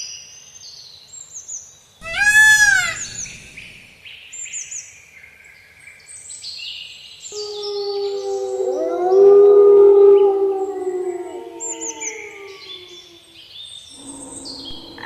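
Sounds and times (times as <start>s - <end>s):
cat meowing: 2.0s - 3.2s
birds chirping: 2.0s - 4.0s, 7.3s - 15.0s
long steady howl: 7.4s - 13.4s, 14.0s - 15.0s.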